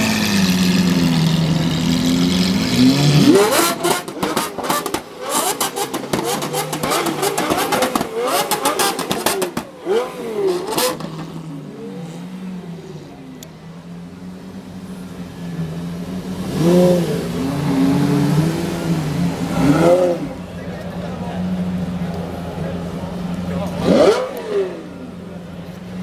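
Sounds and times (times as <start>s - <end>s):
exhaust crackling and popping: 0.0s - 13.8s
sports car engines revving: 0.0s - 26.0s.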